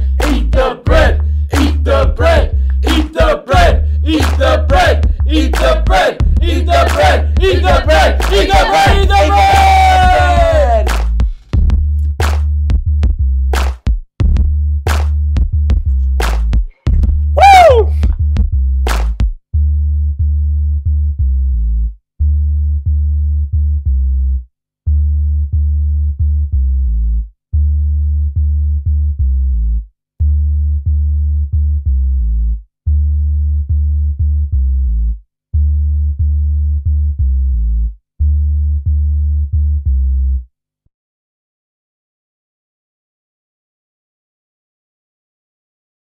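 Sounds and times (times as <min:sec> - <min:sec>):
electronic music with synth bass: 0:00.0 - 0:21.7.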